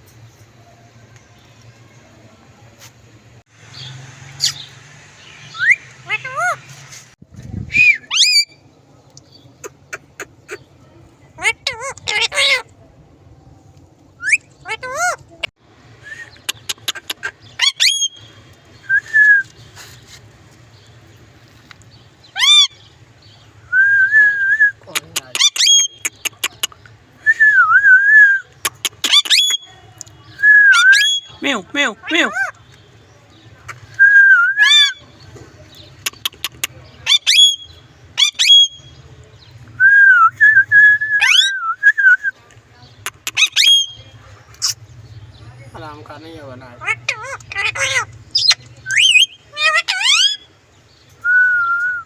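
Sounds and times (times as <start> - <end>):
parrot chirping and whistling: 5.5 - 6.6, 7.7 - 8.6, 17.6 - 18.2, 29.0 - 29.6, 30.5 - 31.3, 37.1 - 38.9, 39.8 - 41.8, 43.2 - 44.0, 47.5 - 50.4.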